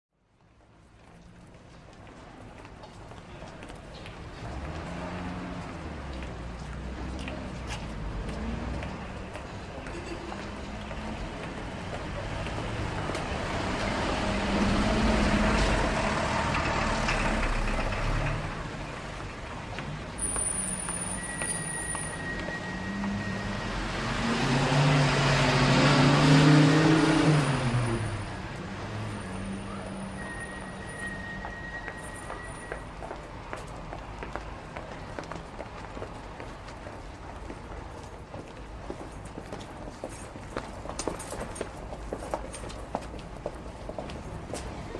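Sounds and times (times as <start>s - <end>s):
vehicles passing: 0.5s - 44.9s
heavy vehicle engine hum: 10.7s - 32.7s.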